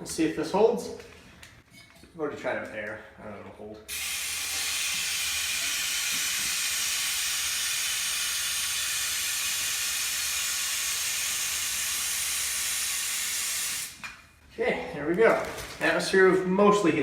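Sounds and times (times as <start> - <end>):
gas hissing: 3.9 - 14.0.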